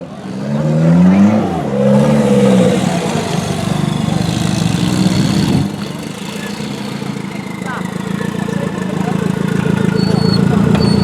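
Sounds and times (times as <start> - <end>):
truck engine revving: 0.0 - 11.0.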